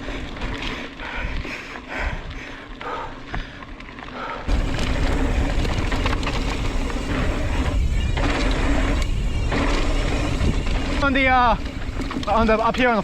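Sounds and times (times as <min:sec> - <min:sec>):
bike rattling and clicking: 0:00.0 - 0:13.0
bike tyre noise: 0:00.0 - 0:13.0
wind buffeting microphone: 0:04.5 - 0:13.0.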